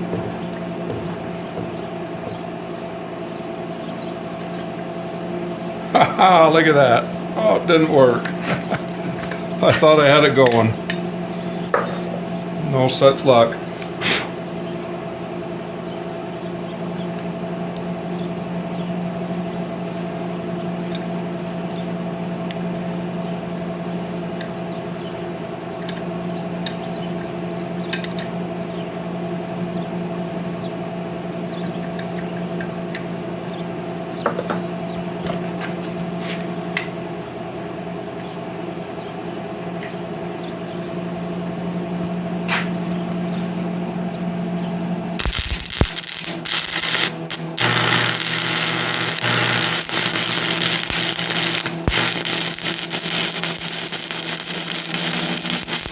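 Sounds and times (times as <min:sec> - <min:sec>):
electrical hum: 0:00.0 - 0:55.9.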